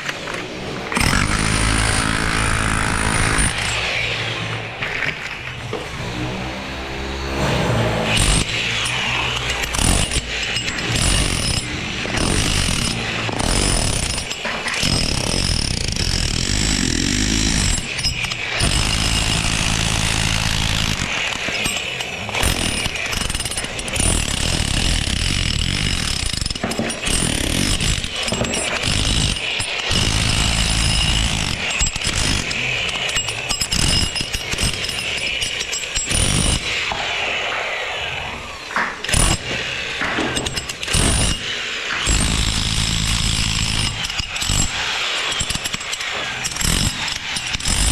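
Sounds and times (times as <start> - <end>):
power tools and machinery running: 0.0 - 47.9
knocks and clatters: 25.6 - 30.4, 38.7 - 47.9.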